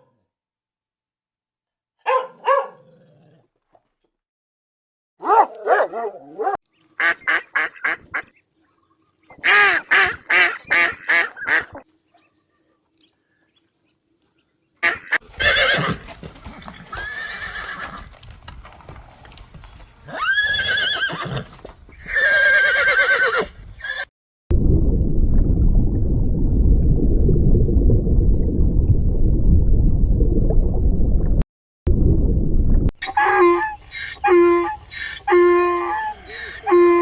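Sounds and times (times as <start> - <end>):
loud low rumble: 24.5 - 32.9.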